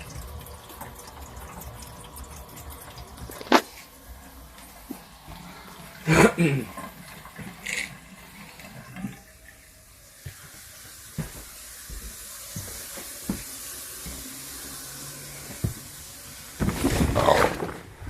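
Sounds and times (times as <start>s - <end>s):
water running from a faucet: 0.0s - 17.2s.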